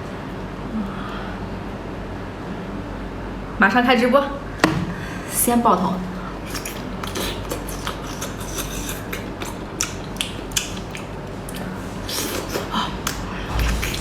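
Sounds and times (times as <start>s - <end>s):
mouth chewing clicks and smacks: 6.4s - 14.0s.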